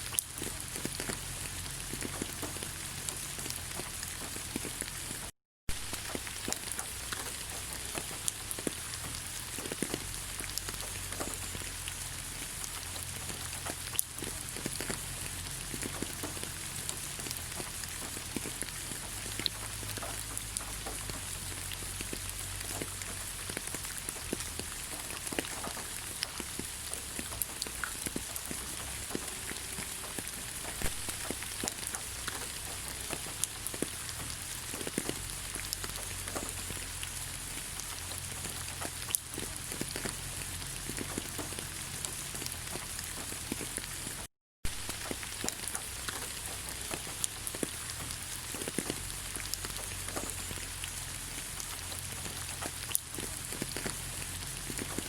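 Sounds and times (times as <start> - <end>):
rain on leaves: 0.0 - 55.0.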